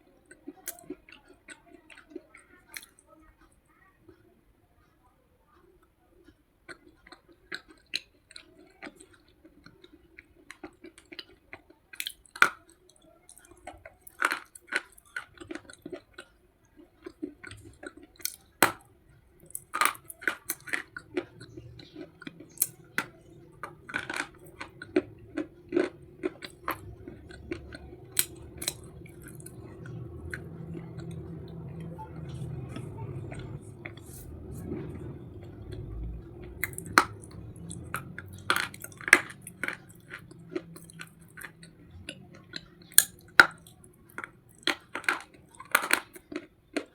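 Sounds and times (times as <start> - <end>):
faint steady hum: 0.0 - 46.9
chalky pencils crunching: 19.4 - 46.9.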